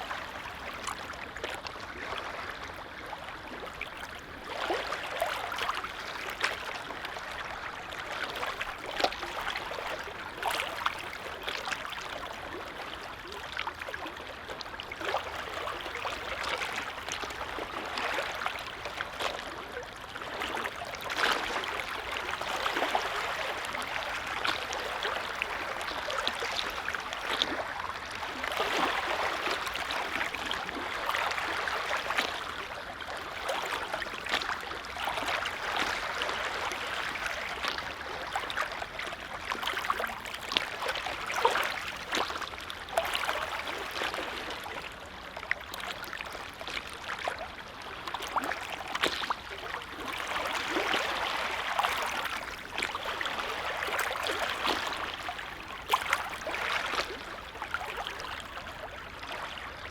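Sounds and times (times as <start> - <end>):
lake waves lapping and splashing: 0.0 - 59.9.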